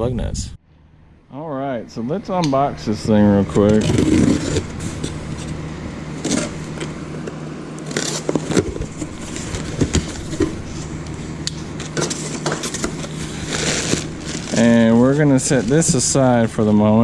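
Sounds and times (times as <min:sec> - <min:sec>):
steady low hum: 0:00.0 - 0:17.0
cardboard box scrapes and rustles: 0:03.7 - 0:05.5, 0:06.2 - 0:06.8, 0:07.8 - 0:10.9, 0:12.0 - 0:16.1.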